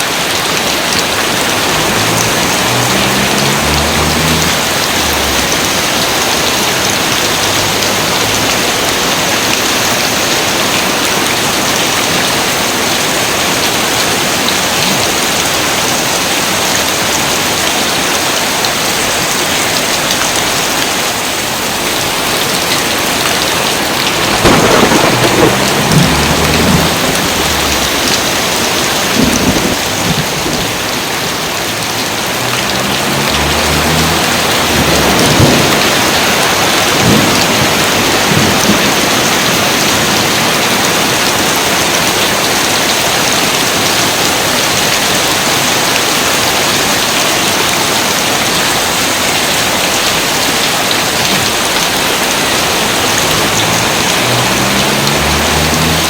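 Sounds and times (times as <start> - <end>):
heavy rain: 0.0 - 56.0
thunder rolling and cracking: 22.5 - 31.4, 33.0 - 40.8.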